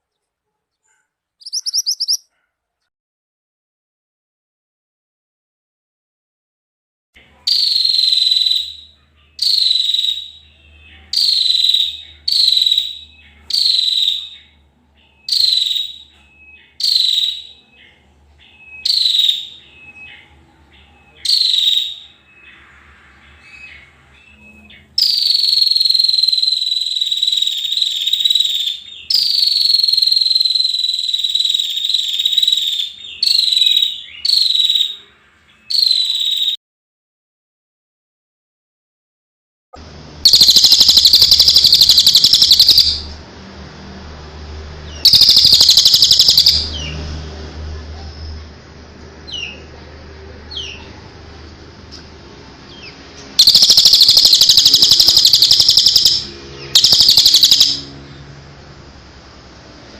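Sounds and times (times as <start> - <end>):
bird buzzing trill: 40.3 - 43.0, 45.1 - 46.6, 53.4 - 57.8.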